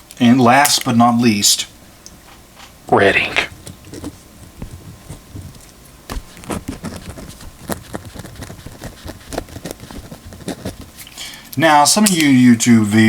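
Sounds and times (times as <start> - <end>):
pen writing on paper: 3.9 - 10.9.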